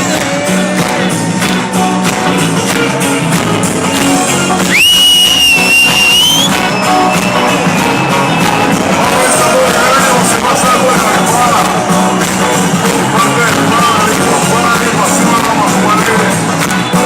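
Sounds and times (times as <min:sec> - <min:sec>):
live band music: 0:00.0 - 0:17.0
high held whistle-like note: 0:04.0 - 0:08.3.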